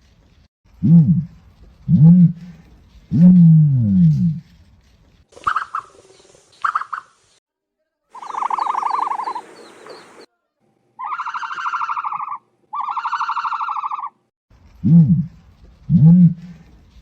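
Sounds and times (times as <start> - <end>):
buzzy pulsing bird calls: 8.2 - 10.3.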